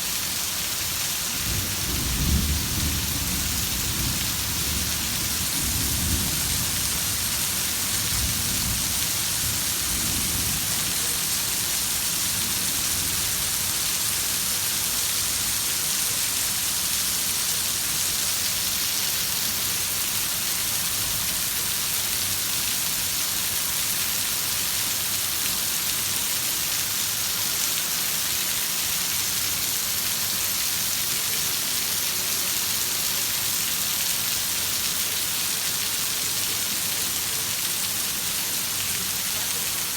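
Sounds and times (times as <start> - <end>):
heavy rain falling: 0.0 - 39.9
thunder rumbling: 1.4 - 7.2.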